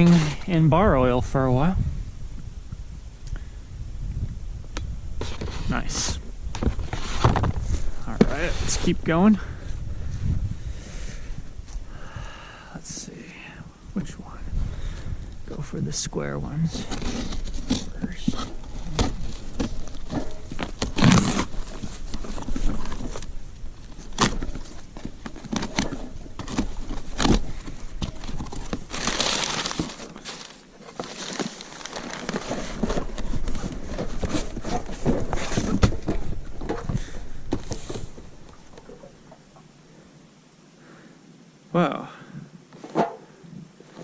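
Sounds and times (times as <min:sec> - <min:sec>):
cardboard knocking and scraping: 0:06.6 - 0:09.0, 0:24.2 - 0:38.2
cardboard tearing and crinkling: 0:16.7 - 0:38.2.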